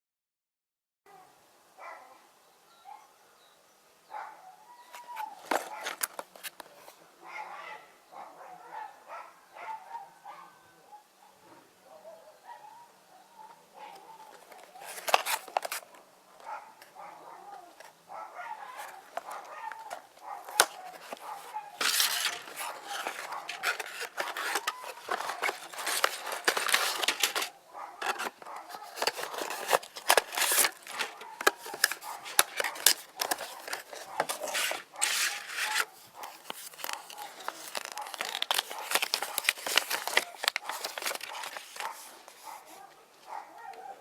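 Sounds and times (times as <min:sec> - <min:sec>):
plastic packaging crinkling: 0:05.1 - 0:06.9, 0:14.2 - 0:16.0, 0:18.7 - 0:42.6.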